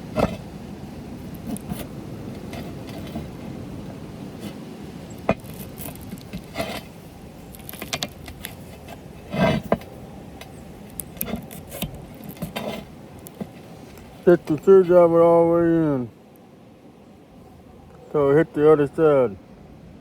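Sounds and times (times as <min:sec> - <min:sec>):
metal scraping: 0:00.0 - 0:00.5, 0:01.4 - 0:03.6, 0:05.3 - 0:10.0, 0:11.1 - 0:14.6.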